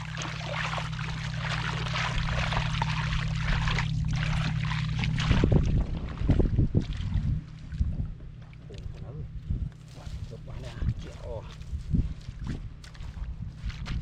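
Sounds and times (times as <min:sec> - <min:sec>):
water splashing and pouring: 0:00.0 - 0:07.9
steady low hum: 0:00.0 - 0:14.0.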